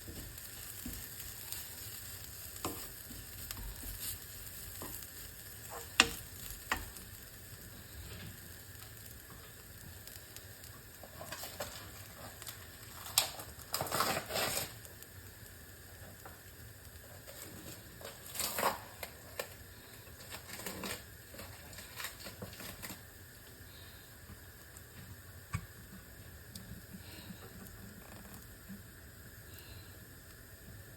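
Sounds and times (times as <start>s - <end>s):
food sizzling in a pan: 0.0s - 30.9s
utensil scraping a pan: 11.0s - 14.8s.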